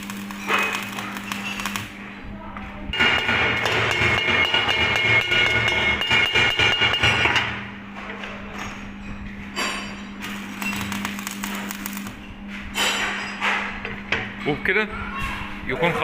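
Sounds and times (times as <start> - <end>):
hammer striking steel: 2.9 - 7.6.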